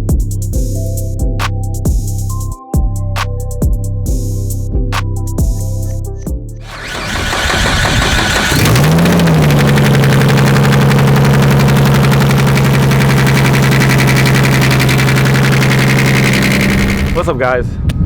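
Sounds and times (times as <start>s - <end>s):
car engine starting and idling: 6.6s - 17.5s
rapid ticking knock: 6.7s - 17.3s.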